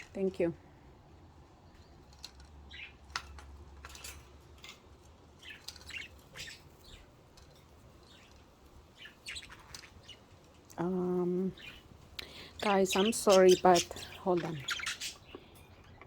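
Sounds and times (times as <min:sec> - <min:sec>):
faint steady hum: 0:00.0 - 0:16.0
budgerigars chirping: 0:02.7 - 0:03.0, 0:05.4 - 0:07.1, 0:08.0 - 0:10.3, 0:11.5 - 0:15.5.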